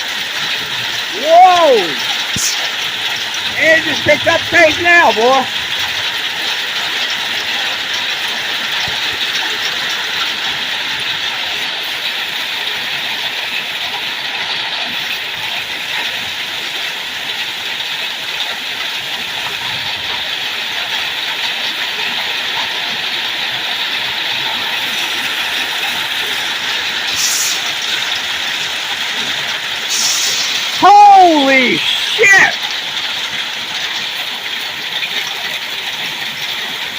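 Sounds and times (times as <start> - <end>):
heavy hail striking: 0.1 - 14.0.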